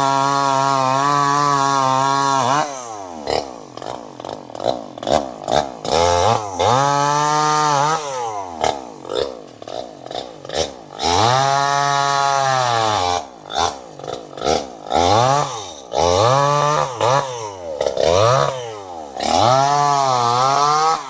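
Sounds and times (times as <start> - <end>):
chainsaw engine revving: 0.0 - 21.0.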